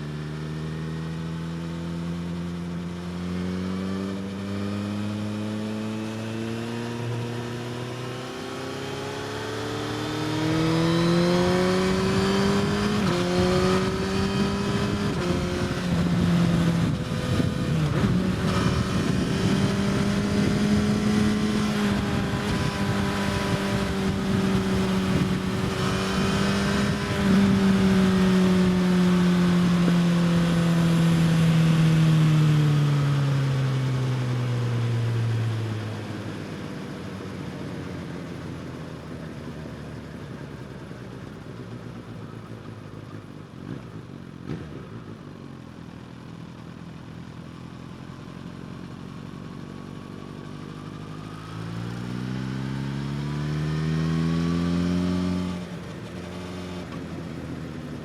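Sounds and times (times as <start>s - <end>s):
motorcycle engine revving high: 0.0s - 37.3s, 50.0s - 58.0s.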